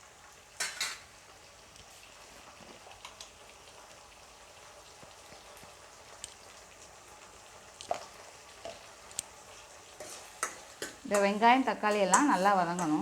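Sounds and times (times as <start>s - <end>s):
onions frying in oil: 0.0s - 13.0s.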